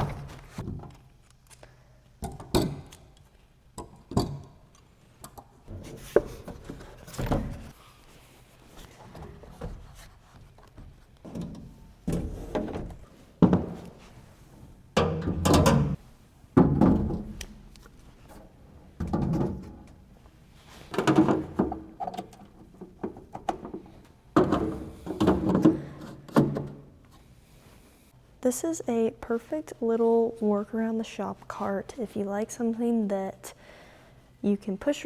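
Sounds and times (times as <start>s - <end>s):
tool cabinet drawers thunking: 0.0s - 0.9s, 5.7s - 7.8s, 10.8s - 14.3s, 15.0s - 16.0s, 20.8s - 26.9s
drawers sliding and scraping: 5.7s - 7.8s, 22.7s - 26.8s.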